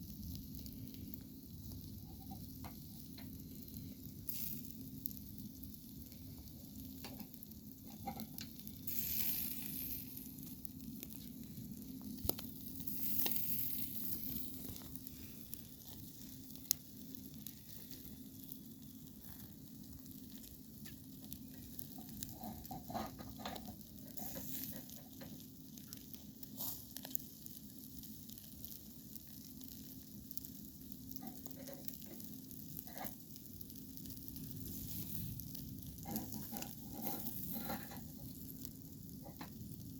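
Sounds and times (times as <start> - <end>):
chicken sizzling: 0.0 - 39.9
sharp clicks and ticks: 12.0 - 12.5.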